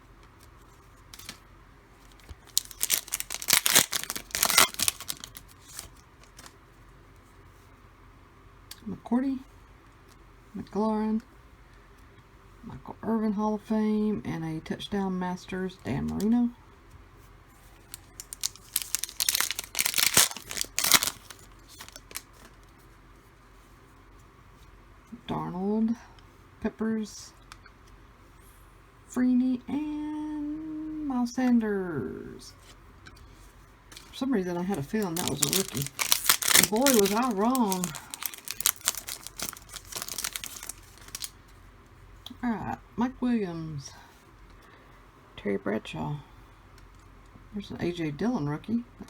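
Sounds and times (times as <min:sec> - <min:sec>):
wrapper rustling: 0:00.3 - 0:01.4, 0:02.0 - 0:06.6, 0:17.7 - 0:22.8, 0:33.9 - 0:41.6
foil pack tearing and crackling: 0:02.1 - 0:06.6, 0:17.9 - 0:22.6, 0:34.0 - 0:41.4.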